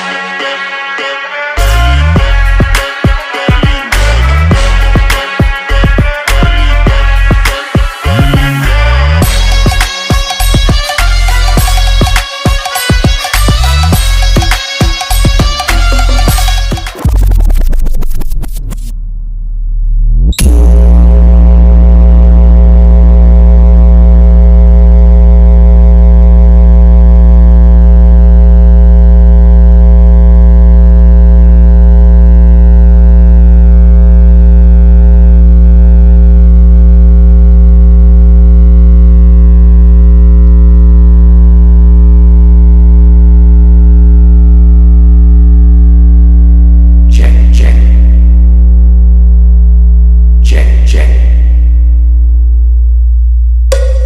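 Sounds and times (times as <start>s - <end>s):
deep electronic bass tone: 1.6s - 2.8s, 3.9s - 12.2s, 13.3s - 54.0s
short sharp hits: 53.7s - 54.0s.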